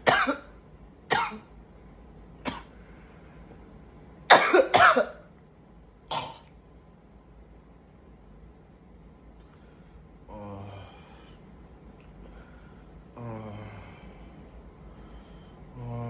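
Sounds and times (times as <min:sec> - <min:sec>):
man coughing: 0:00.0 - 0:00.5, 0:04.3 - 0:05.2.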